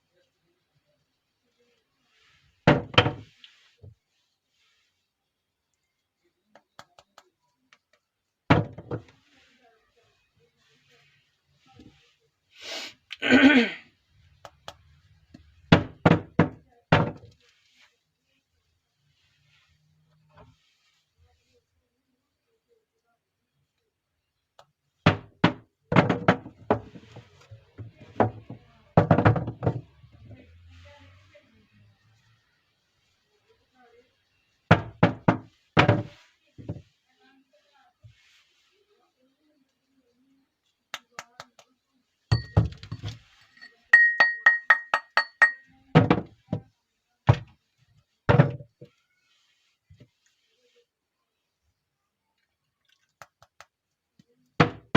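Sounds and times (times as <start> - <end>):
soap packaging knocks and thumps: 2.6 - 3.3, 8.5 - 9.2, 14.5 - 17.4, 25.1 - 29.9, 34.7 - 36.9, 47.3 - 47.6, 48.3 - 48.9
soap bars knocking: 25.1 - 29.9, 42.3 - 43.3, 44.0 - 46.7
quick ringing taps: 42.3 - 45.7.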